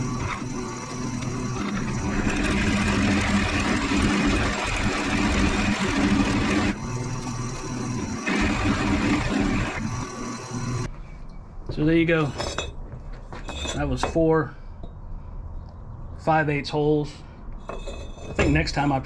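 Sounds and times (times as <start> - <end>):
drill bit cutting: 0.0 - 10.9
drill press motor hum: 0.0 - 10.9.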